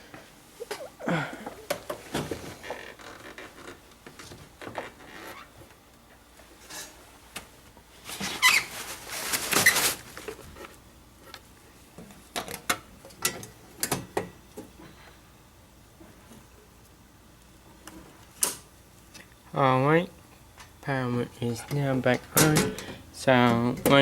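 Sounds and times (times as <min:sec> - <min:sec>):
scraping and rustling: 0:08.0 - 0:10.8.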